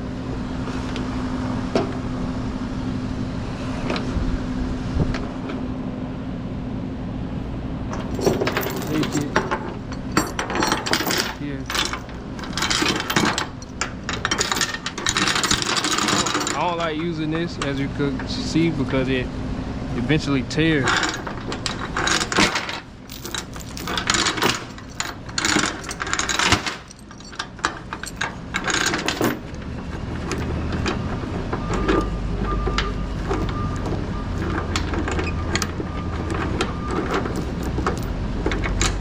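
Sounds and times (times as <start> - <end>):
steady low rumble: 6.8 - 35.7
chain clinking and rattling: 7.9 - 18.5, 20.7 - 39.0.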